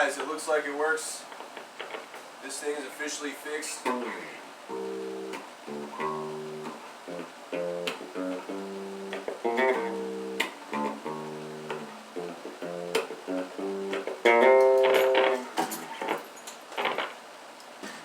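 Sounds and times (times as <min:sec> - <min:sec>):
electric bass plucked notes: 0:03.8 - 0:15.4.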